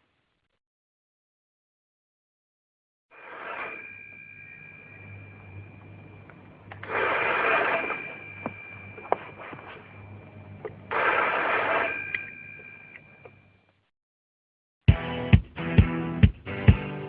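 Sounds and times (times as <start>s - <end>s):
static bursts: 3.2s - 4.1s, 4.8s - 12.3s
steady high whistles: 3.2s - 13.2s
crackling line noise: 3.2s - 13.4s
low hum: 3.5s - 13.4s.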